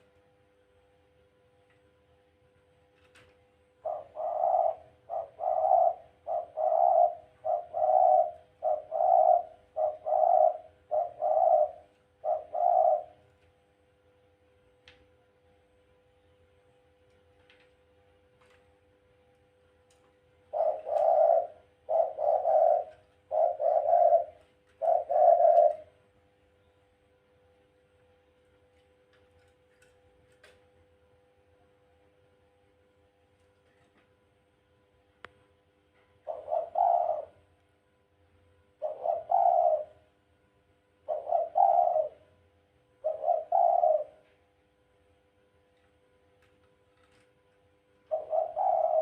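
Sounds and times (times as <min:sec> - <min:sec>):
dove cooing: 0:03.7 - 0:13.4, 0:20.3 - 0:26.2, 0:36.2 - 0:37.6, 0:38.6 - 0:40.3, 0:40.9 - 0:44.5, 0:47.9 - 0:49.0.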